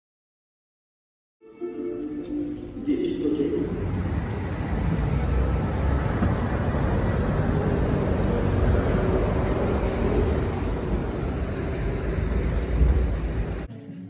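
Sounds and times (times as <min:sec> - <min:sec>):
vehicle rumble and hiss: 0:03.3 - 0:13.7.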